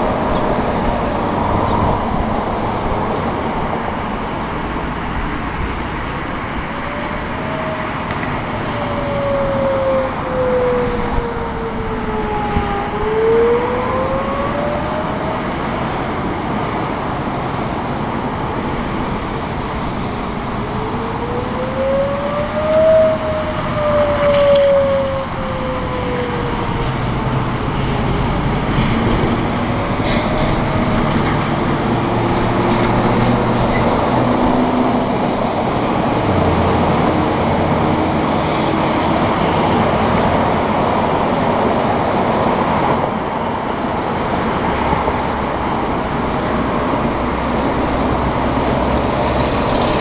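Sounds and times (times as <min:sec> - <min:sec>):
road traffic passing: 0:00.0 - 0:50.0
siren wail falling in pitch: 0:06.6 - 0:16.2, 0:20.4 - 0:28.2.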